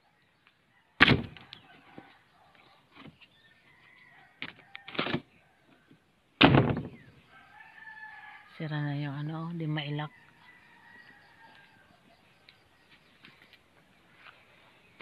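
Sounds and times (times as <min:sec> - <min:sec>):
loud thuds: 0:06.4 - 0:07.1.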